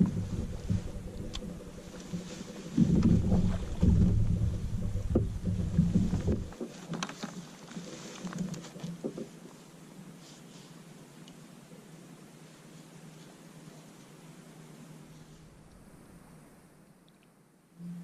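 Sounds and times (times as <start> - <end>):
light knocks against hull: 0.0 - 7.1
faint clicks: 0.0 - 9.4, 17.0 - 17.4
water sloshing and rumbling: 0.0 - 9.4.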